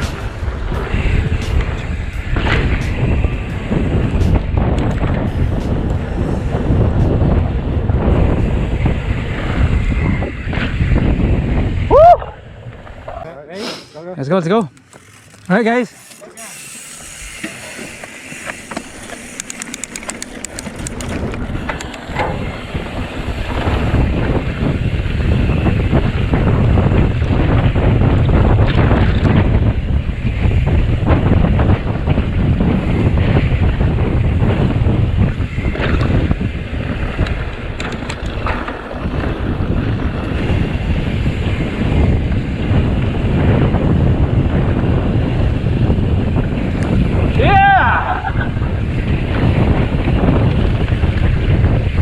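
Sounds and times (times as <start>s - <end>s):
bike tyres on dirt trail: 0.0s - 13.2s, 14.3s - 52.0s
wind buffeting microphone: 0.0s - 13.5s, 14.1s - 52.0s
sharp clicks or rattles: 14.5s - 22.4s
quick ticks: 14.6s - 22.0s.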